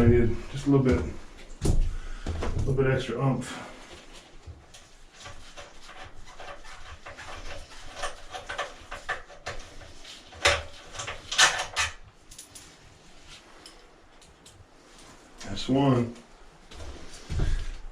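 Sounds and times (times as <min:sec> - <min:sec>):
hand tools clicking and clanking: 0:05.1 - 0:12.7.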